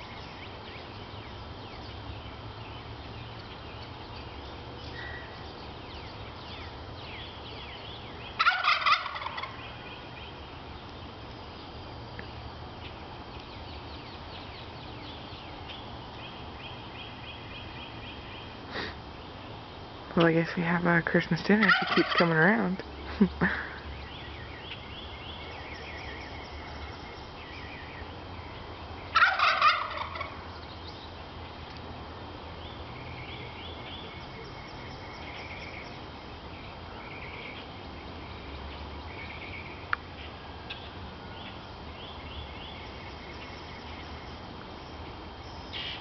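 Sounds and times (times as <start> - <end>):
turkey gobbling: 8.4 - 9.7, 21.6 - 22.4, 29.1 - 30.4.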